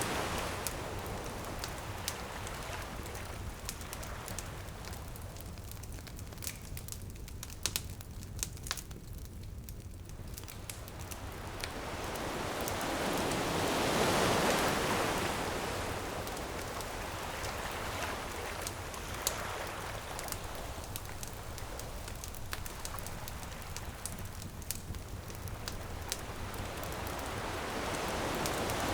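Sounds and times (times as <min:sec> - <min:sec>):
ocean wave washing: 0:00.0 - 0:03.1, 0:10.8 - 0:24.4, 0:25.0 - 0:28.9
bonfire crackling and popping: 0:00.0 - 0:28.9.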